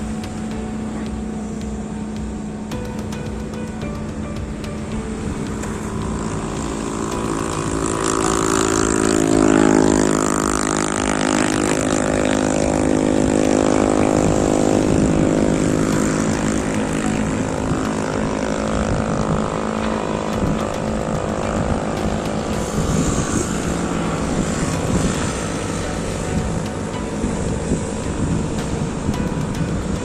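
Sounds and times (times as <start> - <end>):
excavator diesel engine revving: 4.9 - 29.6.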